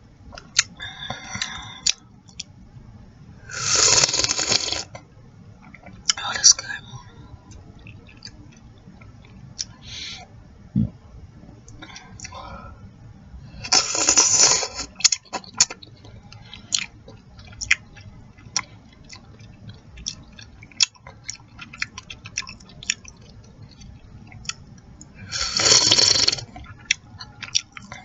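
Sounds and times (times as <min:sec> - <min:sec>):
loud slurp: 0:03.6 - 0:04.9, 0:13.7 - 0:14.9, 0:25.3 - 0:26.5
wet chewing and lip-smacking: 0:07.5 - 0:09.8, 0:14.3 - 0:25.2, 0:26.0 - 0:28.0.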